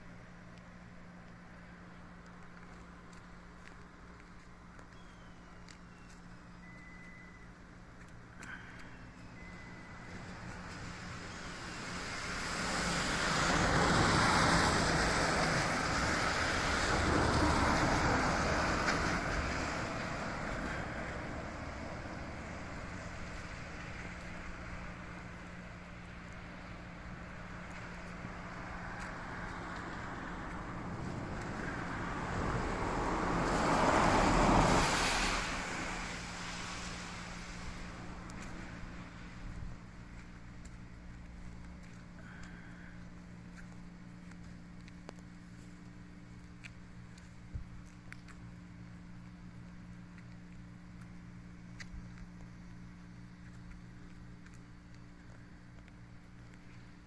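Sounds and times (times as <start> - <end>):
car tyres hissing on wet road: 10.6 - 24.1, 28.7 - 39.4
steady rain hiss: 32.1 - 39.5.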